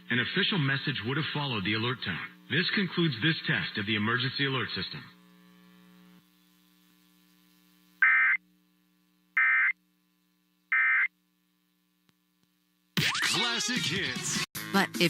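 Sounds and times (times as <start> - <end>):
buzzy digital data bursts: 0.2 - 9.8, 10.7 - 11.1.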